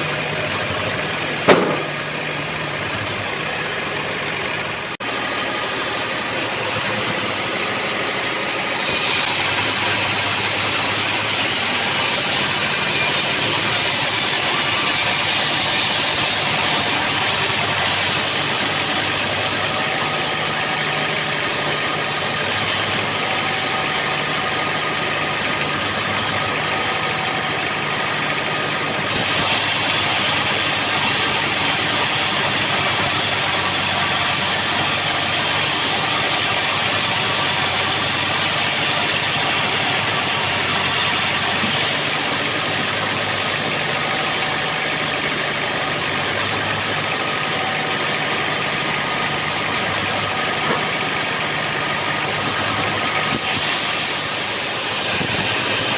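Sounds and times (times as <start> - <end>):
engine drone: 0.0 - 55.9
loud saw hiss: 8.8 - 23.9, 29.1 - 44.9, 52.5 - 55.9.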